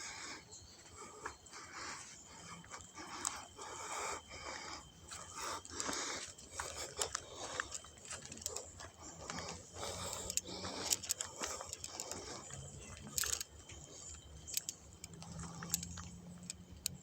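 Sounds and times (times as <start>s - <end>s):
close breathing: 0.0s - 16.9s
light clicks and crackles: 5.2s - 17.0s.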